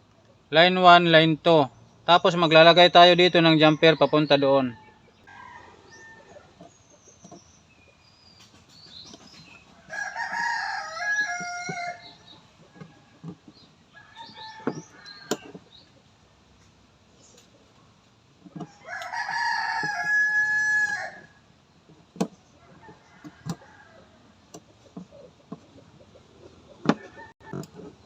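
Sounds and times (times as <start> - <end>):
rooster crowing: 3.7 - 6.6, 9.8 - 12.1, 18.8 - 21.4.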